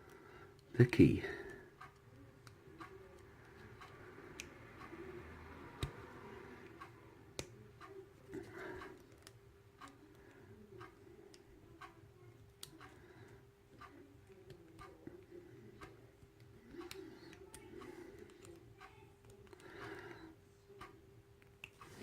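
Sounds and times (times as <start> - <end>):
faint regular ticking: 0.0 - 22.0.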